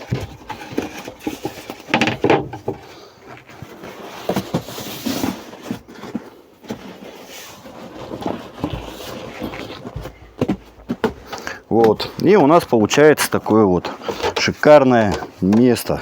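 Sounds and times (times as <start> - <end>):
plywood panel knocking and scraping: 0.0 - 2.9.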